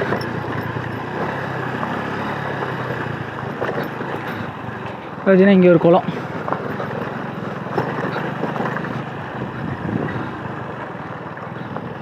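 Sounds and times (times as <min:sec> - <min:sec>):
motorcycle engine running: 0:00.0 - 0:12.0
wind on microphone: 0:09.4 - 0:10.6.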